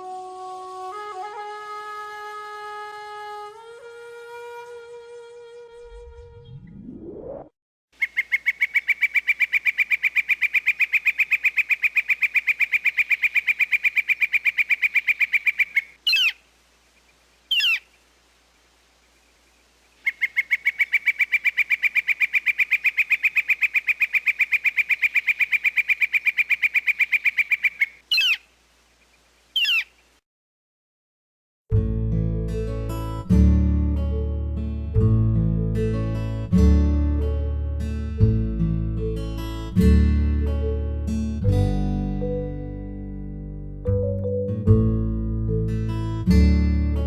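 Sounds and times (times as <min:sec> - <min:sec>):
bird single short calls: 0:08.0 - 0:16.4, 0:17.5 - 0:18.0, 0:20.0 - 0:30.0
northern flicker long call: 0:08.0 - 0:18.1, 0:19.0 - 0:30.1.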